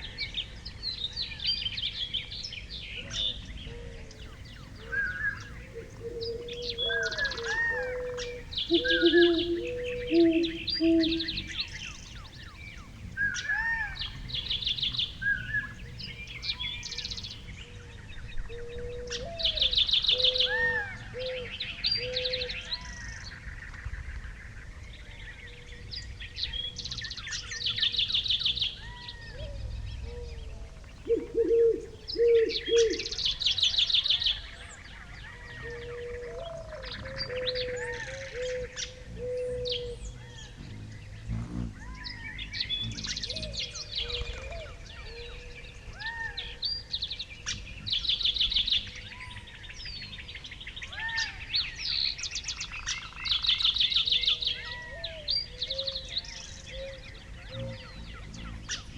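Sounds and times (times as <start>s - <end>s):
small birds chirping: 4.2s - 17.4s, 31.0s - 33.4s.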